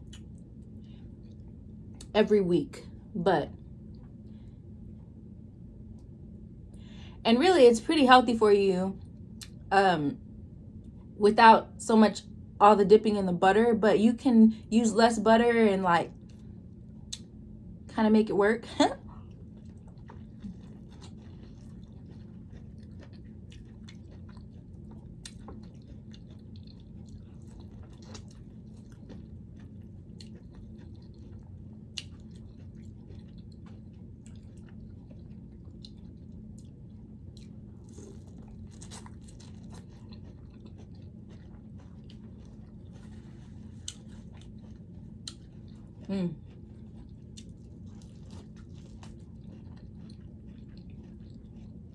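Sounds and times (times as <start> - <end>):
person chewing food: 0.0 - 2.1, 19.0 - 51.9
steady low hum: 0.0 - 51.9.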